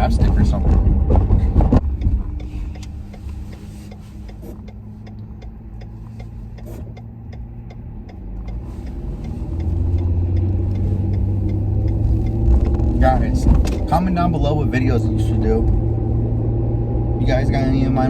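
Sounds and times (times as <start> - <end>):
engine and road hum: 0.0 - 18.0
light ticking: 1.8 - 14.4.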